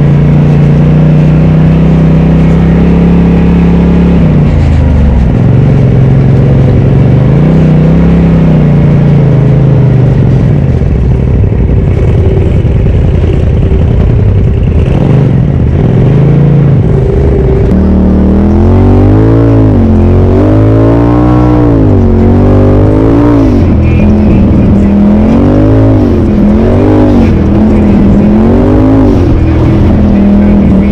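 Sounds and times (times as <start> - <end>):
off-road vehicle engine revving: 0.0 - 30.9.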